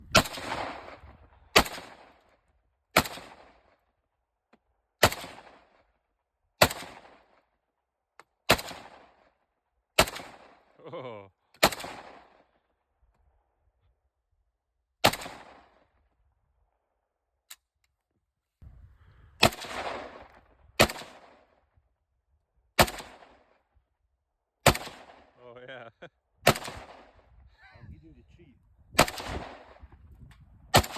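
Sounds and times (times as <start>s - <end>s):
gunshots with rolling echo: 0.1s - 2.2s, 5.0s - 5.7s, 10.0s - 10.6s, 11.6s - 12.4s, 19.4s - 21.5s, 22.8s - 23.4s, 24.6s - 25.4s, 26.4s - 27.3s, 29.0s - 29.9s.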